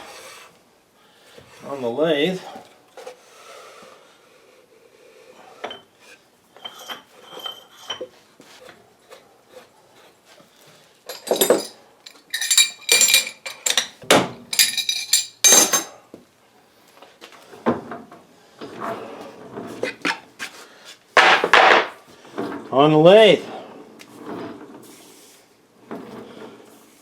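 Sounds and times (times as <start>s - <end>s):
heavy metal parts clanking: 11.1s - 13.9s, 14.5s - 15.9s.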